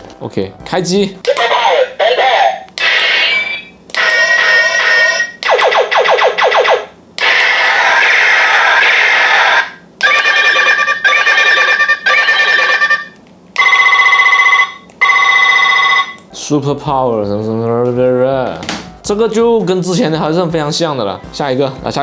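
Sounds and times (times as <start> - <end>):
toy noisy burst: 1.3 - 13.2.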